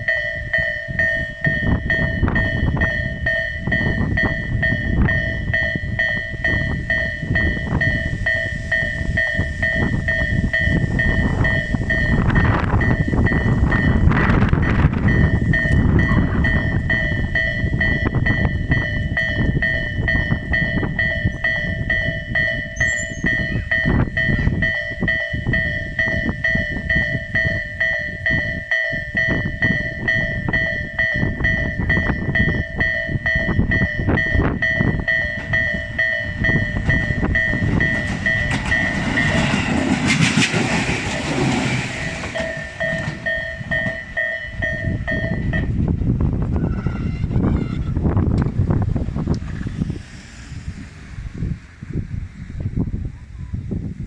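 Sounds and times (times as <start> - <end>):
level-crossing alarm ringing: 0.0 - 48.8
wind rumbling on microphone: 0.0 - 54.0
train wheels clicking over rail joints: 23.3 - 46.6.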